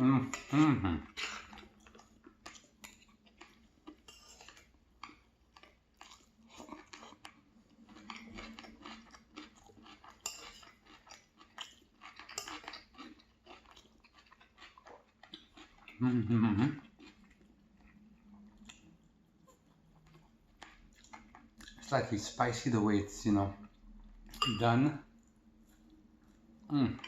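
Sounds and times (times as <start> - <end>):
person chewing: 0.2 - 21.9
cutlery clinking on a dish: 4.1 - 4.6, 10.1 - 10.8, 12.3 - 12.7.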